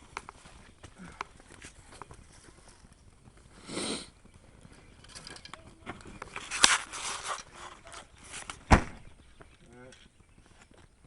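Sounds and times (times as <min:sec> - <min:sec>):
rustling and handling noises: 0:04.6 - 0:10.9.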